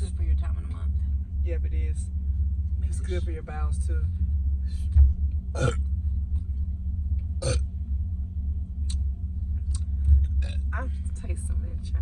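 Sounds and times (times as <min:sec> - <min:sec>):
steady low rumble: 0:00.0 - 0:12.0
person burping: 0:05.6 - 0:05.8, 0:07.4 - 0:07.6, 0:10.4 - 0:10.7.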